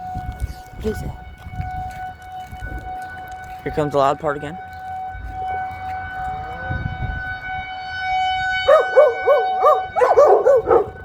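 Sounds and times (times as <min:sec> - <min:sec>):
warning siren steady tone: 0:00.0 - 0:11.0
dog barking: 0:08.7 - 0:11.0.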